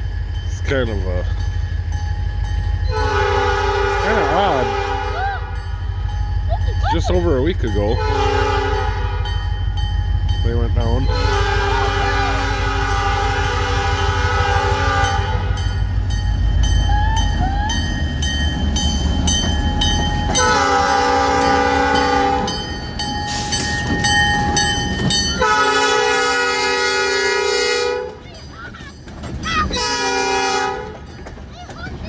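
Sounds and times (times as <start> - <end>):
locomotive passing rumble: 0.0 - 32.0
locomotive air horn: 2.9 - 5.6, 7.9 - 9.4, 11.1 - 15.7, 20.3 - 22.6, 25.3 - 28.2, 29.8 - 31.0.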